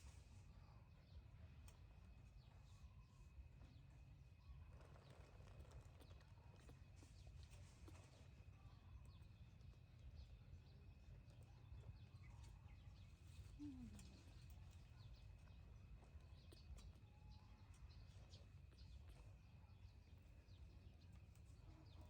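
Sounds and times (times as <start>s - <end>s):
faint ticks and chirps: 0.0s - 22.0s.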